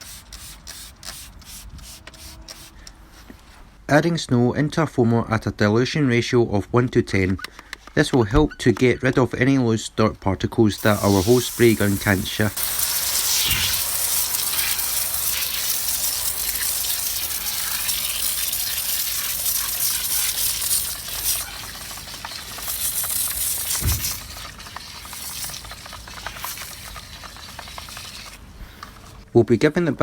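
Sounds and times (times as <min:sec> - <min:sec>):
foam spray hissing: 0:00.0 - 0:02.8, 0:10.8 - 0:29.2.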